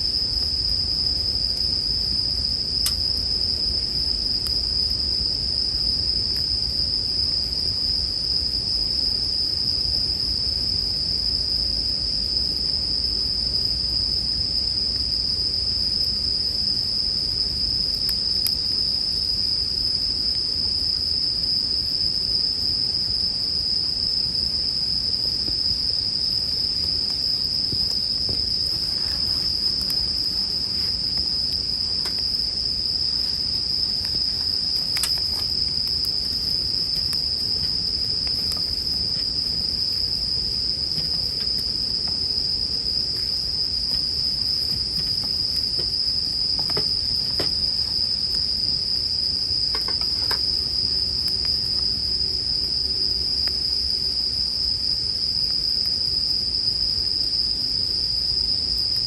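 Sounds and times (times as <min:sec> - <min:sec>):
crickets singing: 0:00.0 - 0:59.0
campfire crackling: 0:00.1 - 0:07.7, 0:15.7 - 0:54.0.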